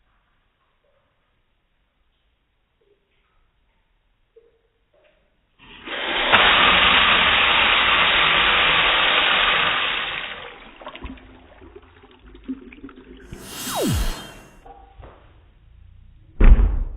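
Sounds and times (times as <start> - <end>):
firework rocket rushing hiss: 13.3 - 14.6.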